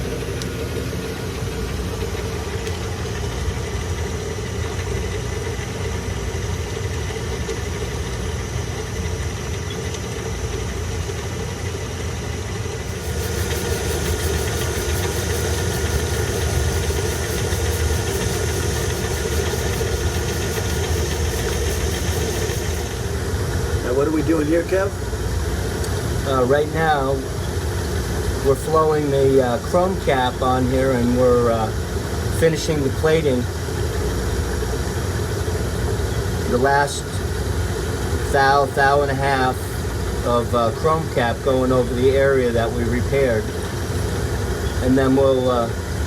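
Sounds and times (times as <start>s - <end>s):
high pulsing hiss: 0.0s - 46.0s
machinery humming: 0.0s - 46.0s.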